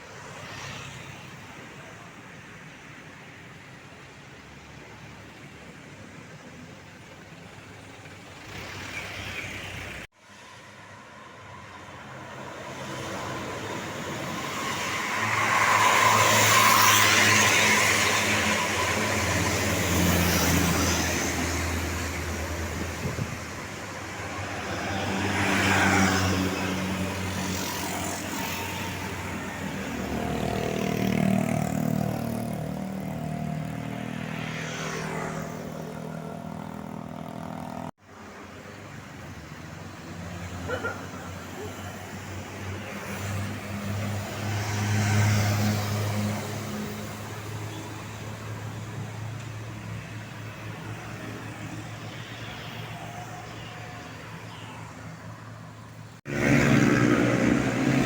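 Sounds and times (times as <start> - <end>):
road traffic passing: 0.0 - 58.0.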